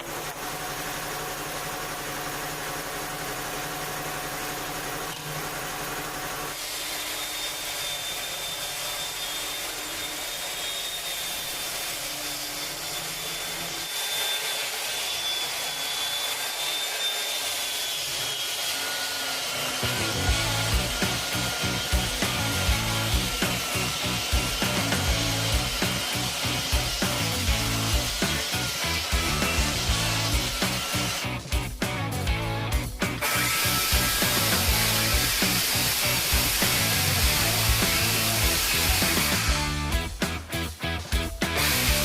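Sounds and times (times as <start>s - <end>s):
power tool working wood: 0.0s - 42.0s
low regular beat: 20.2s - 42.0s.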